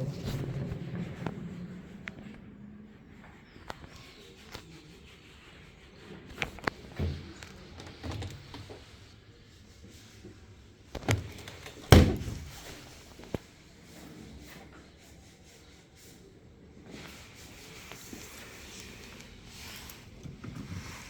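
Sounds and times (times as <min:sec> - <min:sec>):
knocks and thuds: 0:11.9 - 0:12.7.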